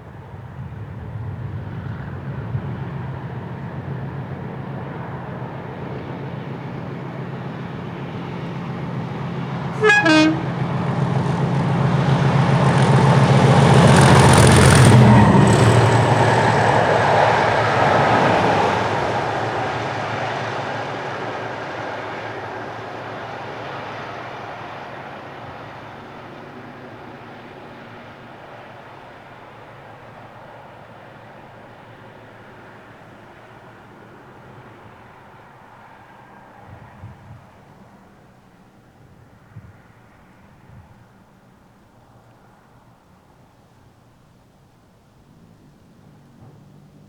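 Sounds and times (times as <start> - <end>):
diesel locomotives passing: 0.0 - 47.0
train horn blast: 9.7 - 10.9.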